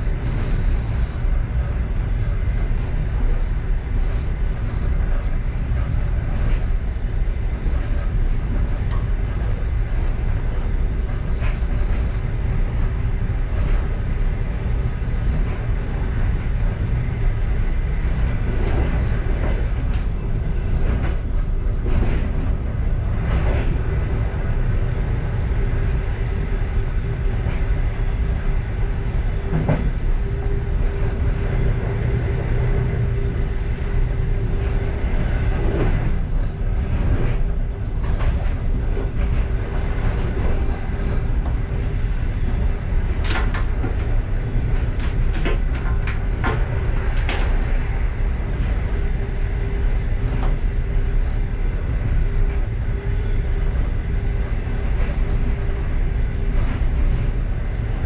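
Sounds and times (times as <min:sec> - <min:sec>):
train rumbling: 0:00.0 - 0:58.0
train wheels clicking and knocking: 0:36.8 - 0:49.0.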